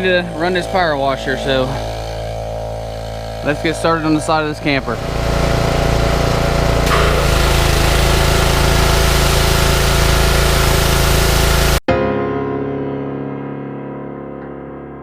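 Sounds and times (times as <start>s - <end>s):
spray hissing: 0.0s - 11.8s
power washer engine drone: 0.0s - 11.9s.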